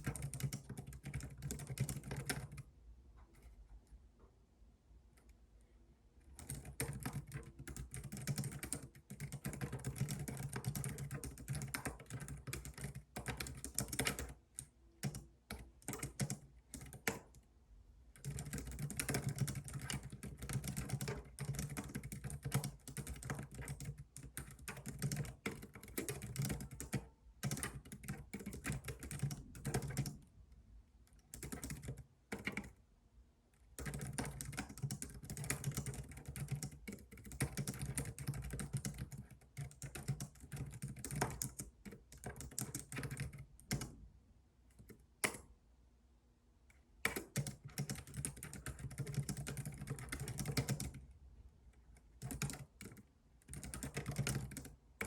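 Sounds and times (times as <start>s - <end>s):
keyboard key clicks: 44.8s - 45.5s, 47.0s - 51.0s.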